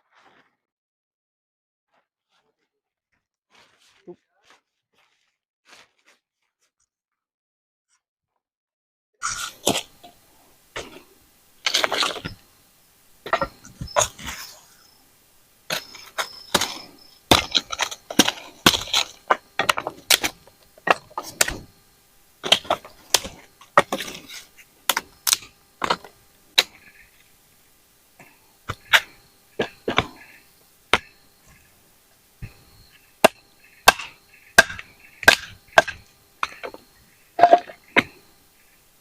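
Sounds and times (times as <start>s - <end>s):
wood being broken and chopped: 15.7s - 21.7s, 22.4s - 26.8s, 32.4s - 38.2s.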